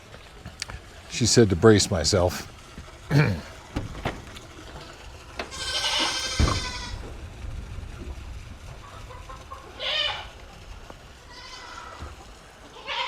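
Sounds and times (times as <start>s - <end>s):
goat bleating: 5.5s - 7.0s, 11.3s - 12.1s, 12.7s - 13.0s
thump: 6.4s - 6.7s.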